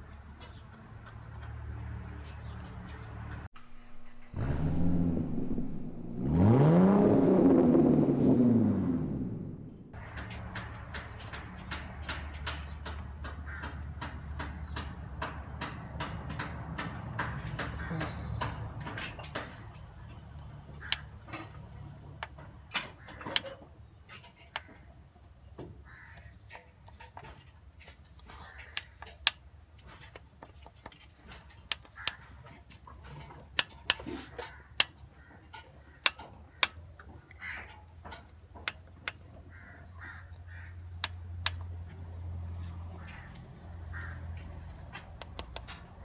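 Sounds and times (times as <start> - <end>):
engine running with low hum: 0.0 - 23.4, 37.4 - 46.0
sharp clicks: 44.7 - 46.0.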